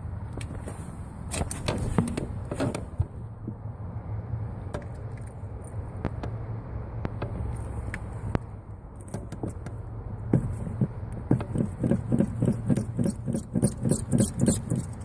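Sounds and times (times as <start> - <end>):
car engine running: 9.2 - 15.0.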